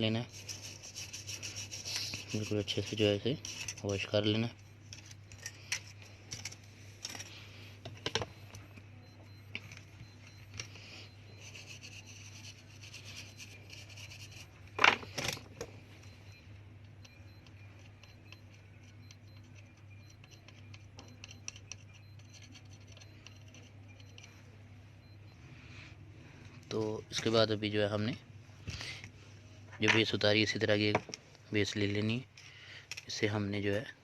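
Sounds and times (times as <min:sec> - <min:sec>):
small tools scratching circuit board: 0:00.0 - 0:07.3, 0:11.3 - 0:14.6, 0:17.0 - 0:24.5
steady low hum: 0:00.0 - 0:34.0.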